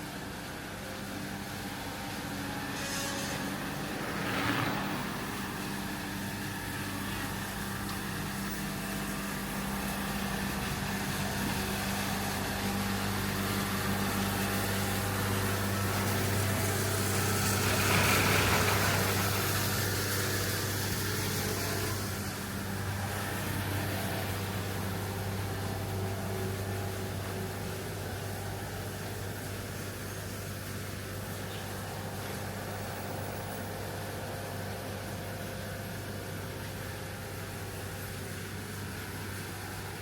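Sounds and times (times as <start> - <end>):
steady low hum: 0.0 - 40.0
vehicles passing: 1.0 - 29.2.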